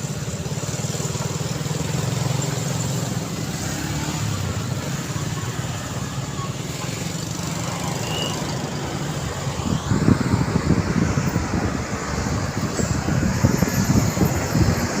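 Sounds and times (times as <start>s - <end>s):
road traffic rushing by: 0.0s - 15.0s
wind buffeting microphone: 8.5s - 15.0s.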